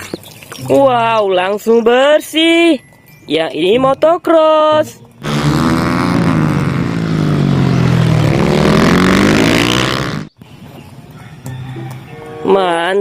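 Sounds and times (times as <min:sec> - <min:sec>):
dirt bike engine revving: 0:05.2 - 0:10.4.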